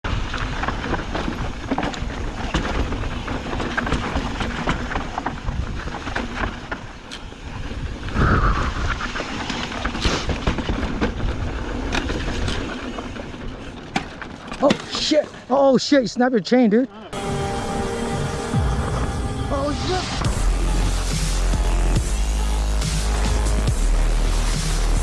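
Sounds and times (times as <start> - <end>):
bike tyre noise: 0.3 - 15.0
bike rattling clicks: 1.0 - 7.4
wind buffeting microphone: 1.1 - 9.2.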